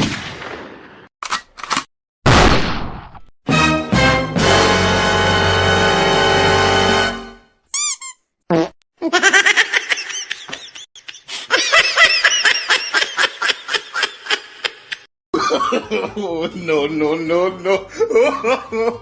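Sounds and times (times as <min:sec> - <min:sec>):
high chirps: 0:07.8 - 0:08.2
cartoon-style laughter: 0:09.0 - 0:16.3, 0:17.5 - 0:19.0.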